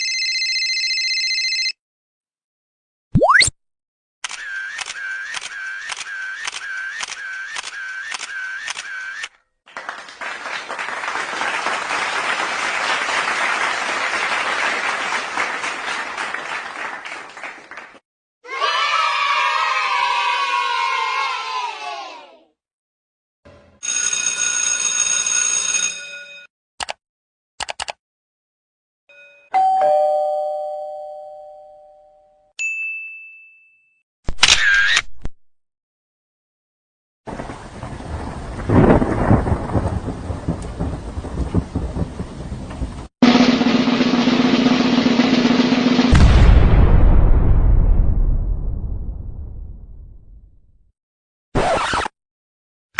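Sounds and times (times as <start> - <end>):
applause: 9.6 - 18.0
quick clicks: 26.8 - 27.0, 27.6 - 28.0
high ding: 29.1 - 34.0.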